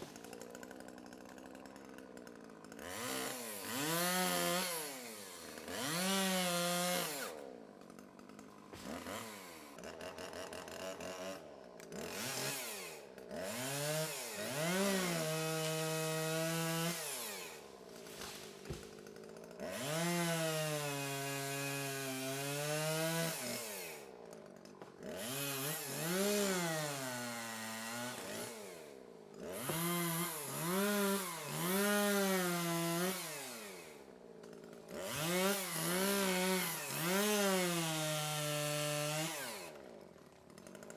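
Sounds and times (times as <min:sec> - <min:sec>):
chainsaw engine revving: 0:00.0 - 0:40.9.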